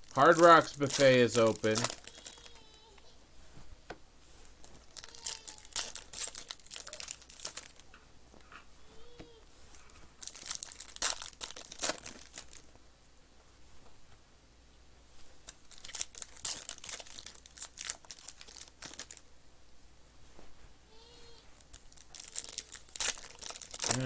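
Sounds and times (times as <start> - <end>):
card pack wrappers crinkling: 0.0 - 3.1, 4.5 - 8.0, 10.2 - 12.7, 15.4 - 19.2, 21.6 - 24.0.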